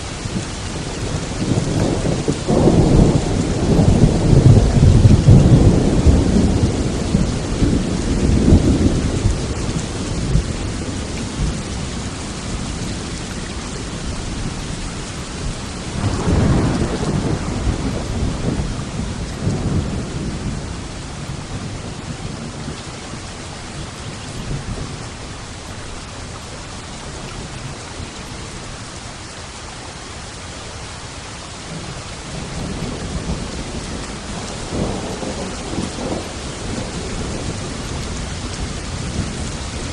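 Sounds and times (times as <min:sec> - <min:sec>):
heavy rain: 0:00.0 - 0:39.9
rolling thunder: 0:00.3 - 0:13.2, 0:15.4 - 0:25.3, 0:31.7 - 0:39.9.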